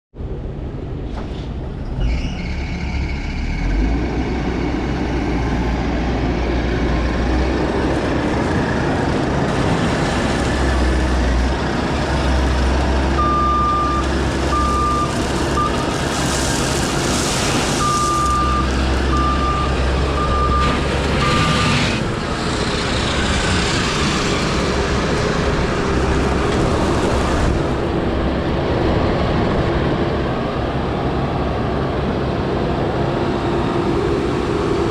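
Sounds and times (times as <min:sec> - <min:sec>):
diesel engine running: 0:01.6 - 0:34.9
reverse alarm beeping: 0:13.2 - 0:15.9, 0:17.8 - 0:21.8.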